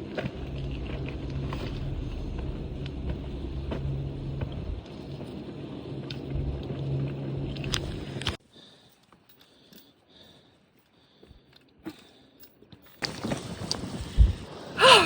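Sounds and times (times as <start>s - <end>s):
wind buffeting microphone: 0.0s - 8.3s.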